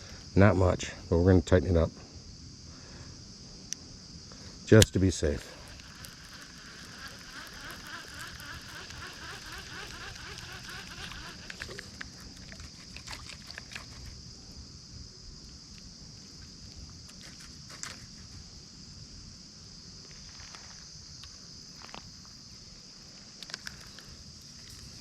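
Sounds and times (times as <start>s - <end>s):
high-pitched insect chorus: 0.0s - 25.0s
fishing reel clicks: 4.8s - 12.6s.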